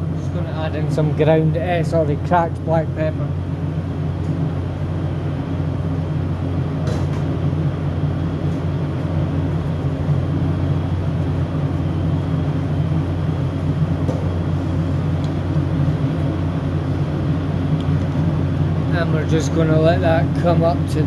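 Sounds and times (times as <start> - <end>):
low machine hum: 0.0 - 21.0.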